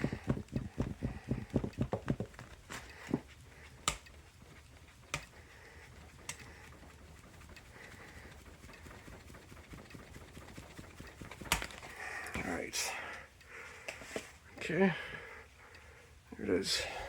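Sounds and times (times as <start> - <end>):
soft low air puffs: 0.0 - 17.0
sharp clicks: 3.8 - 4.2.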